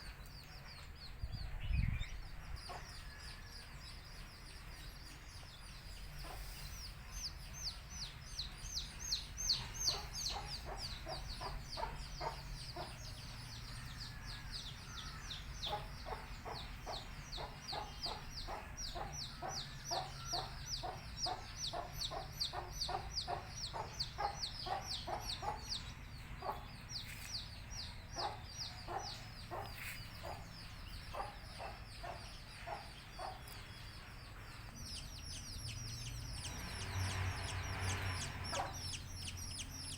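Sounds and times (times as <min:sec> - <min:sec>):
chicks peeping: 0:04.2 - 0:39.9
hen clucking: 0:09.0 - 0:13.2, 0:15.6 - 0:25.8, 0:28.1 - 0:33.4.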